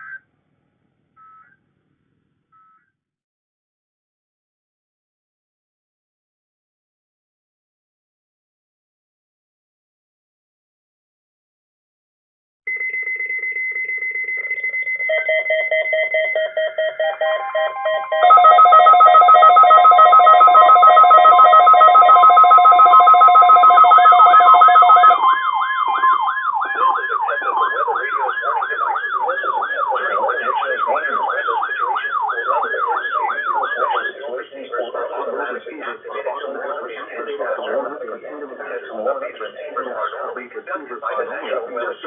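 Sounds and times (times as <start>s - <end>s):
high electronic beep: 12.7s - 34.1s
loud pulsing beeps: 12.7s - 37.7s
rapid siren wail: 13.8s - 36.1s.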